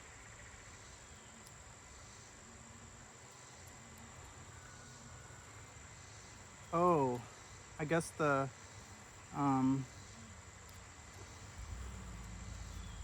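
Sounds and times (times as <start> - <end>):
honeybees buzzing past: 2.0 - 13.0
low hum: 11.2 - 13.0.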